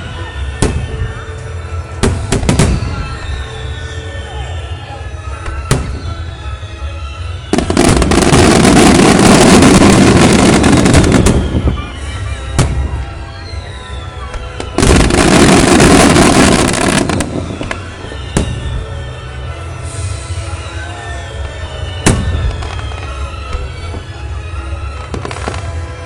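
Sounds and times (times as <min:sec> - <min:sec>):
firework burst volleys: 0:07.5 - 0:12.9, 0:14.8 - 0:19.0.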